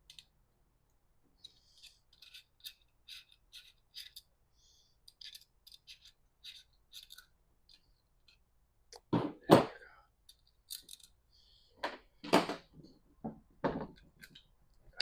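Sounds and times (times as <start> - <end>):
small metal parts clicking: 0.0 - 0.3, 1.4 - 4.3, 5.0 - 8.4, 10.2 - 11.2, 13.9 - 14.5.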